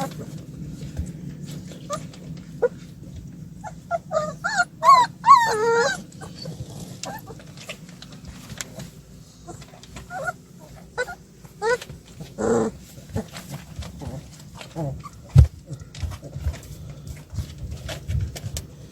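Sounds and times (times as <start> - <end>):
puppies whining and yelping: 1.6 - 7.8, 9.5 - 13.3, 14.0 - 15.5.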